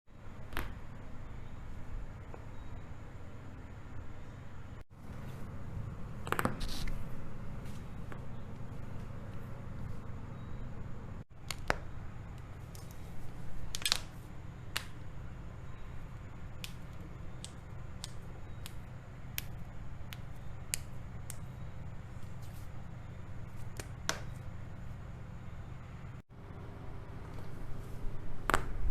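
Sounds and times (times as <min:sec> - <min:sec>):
steady low hum: 0:00.1 - 0:28.9.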